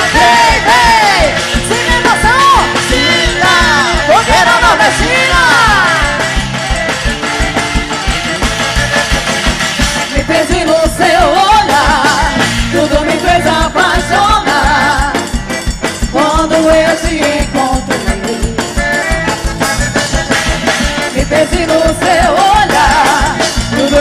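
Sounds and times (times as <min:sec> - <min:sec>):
upbeat dance music: 0:00.0 - 0:06.3
low drum beat: 0:00.0 - 0:24.0.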